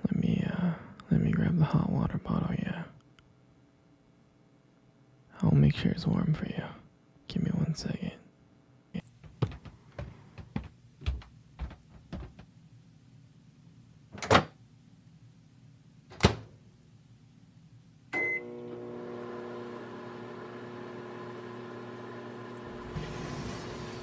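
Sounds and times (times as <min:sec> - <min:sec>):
soft taps: 0:09.2 - 0:12.5
microwave beep: 0:18.1 - 0:18.8
microwave humming: 0:18.1 - 0:24.0.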